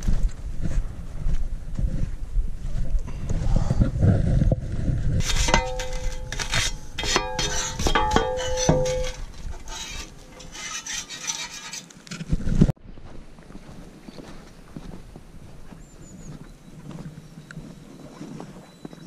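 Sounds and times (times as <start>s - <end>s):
metal tool scraping stony soil: 5.2s - 12.4s.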